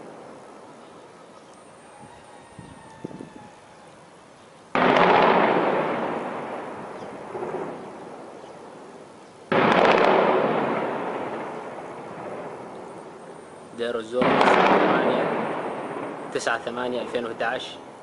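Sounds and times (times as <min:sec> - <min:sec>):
heavy weapon blasts echoing: 0:04.8 - 0:08.3, 0:09.5 - 0:12.7, 0:14.1 - 0:17.2.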